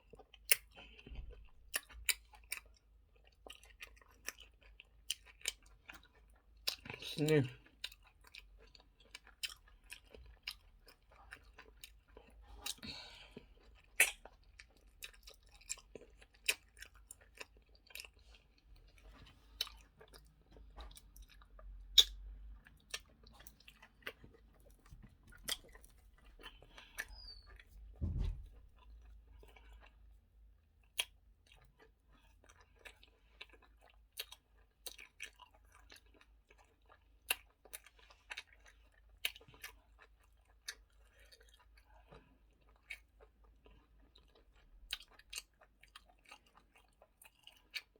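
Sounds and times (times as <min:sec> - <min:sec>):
person chewing: 0:00.0 - 0:47.9
low thump: 0:27.9 - 0:28.7.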